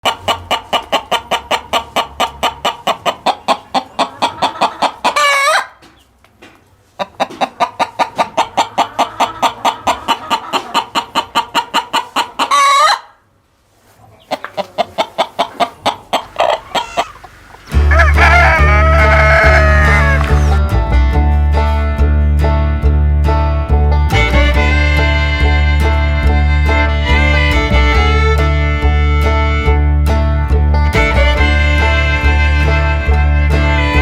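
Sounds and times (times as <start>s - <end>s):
chicken squawk: 0.0s - 5.8s, 7.0s - 13.2s, 13.9s - 20.6s
chicken clucking: 0.0s - 20.9s.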